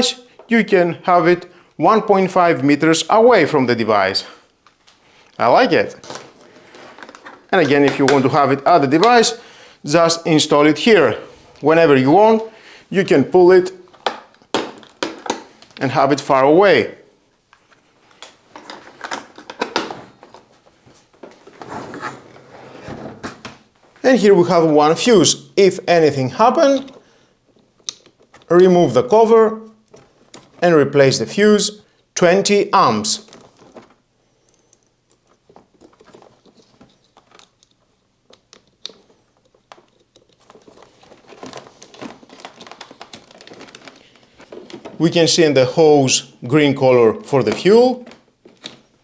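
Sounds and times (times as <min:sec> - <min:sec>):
hands handling toolbox and cable: 0:04.7 - 0:09.4, 0:13.6 - 0:16.2, 0:17.5 - 0:24.0, 0:26.4 - 0:28.5, 0:29.8 - 0:30.6, 0:33.2 - 0:45.2, 0:47.1 - 0:49.0.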